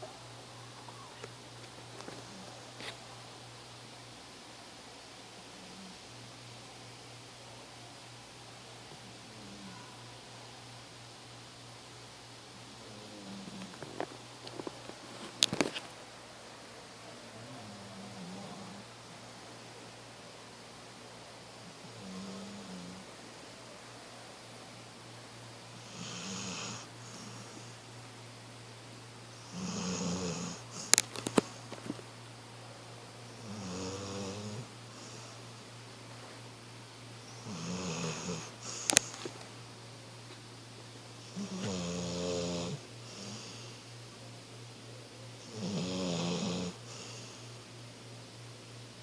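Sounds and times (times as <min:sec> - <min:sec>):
faint steady low hum: 0:00.0 - 0:49.0
person snoring: 0:29.4 - 0:31.0, 0:41.3 - 0:43.8, 0:45.5 - 0:47.4.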